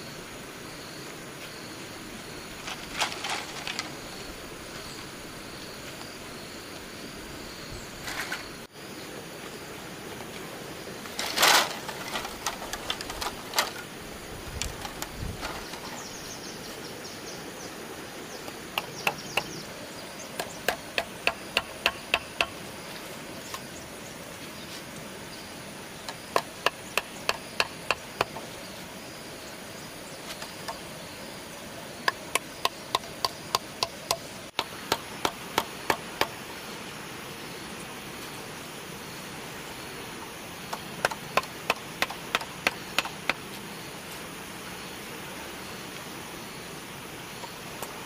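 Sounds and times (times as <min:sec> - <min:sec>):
tool striking bamboo: 0:20.4 - 0:22.6, 0:26.1 - 0:28.5, 0:32.0 - 0:36.4, 0:40.7 - 0:43.4.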